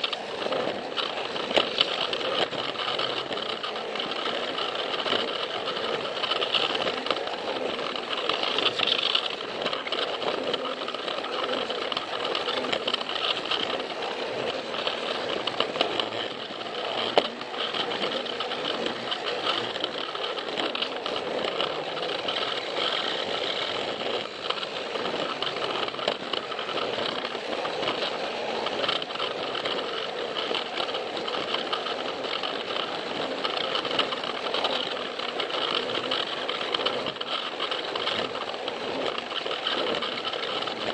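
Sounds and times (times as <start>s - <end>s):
toy train motor whirring: 0.0s - 40.9s
wheels clicking on plastic track: 0.0s - 40.9s.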